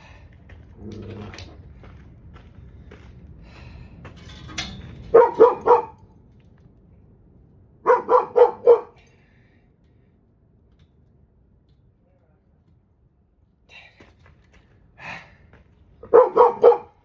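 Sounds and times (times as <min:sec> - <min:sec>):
dog barking: 0:05.1 - 0:06.0, 0:07.8 - 0:09.0, 0:16.0 - 0:17.0.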